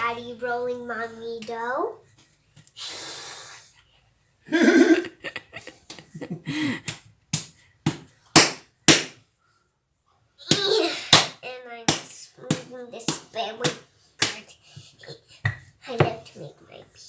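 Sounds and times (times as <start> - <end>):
breathy hiss: 2.8 - 4.0
sharp slaps: 6.8 - 9.2, 10.5 - 14.5.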